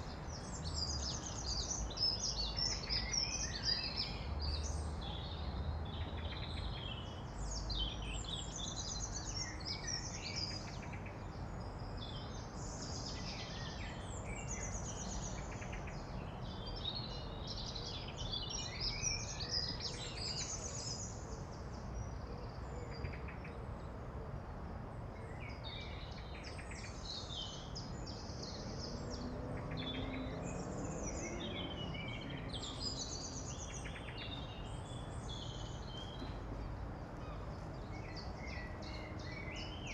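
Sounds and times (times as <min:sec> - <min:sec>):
outdoor ambient noise: 0:00.0 - 0:39.9
birds chirping and singing: 0:25.8 - 0:39.9.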